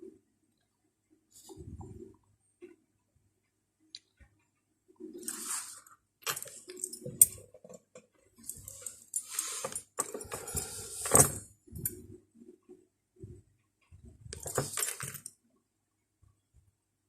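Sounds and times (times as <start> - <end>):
small objects rustling and clinking: 8.4 - 12.0, 14.3 - 15.3.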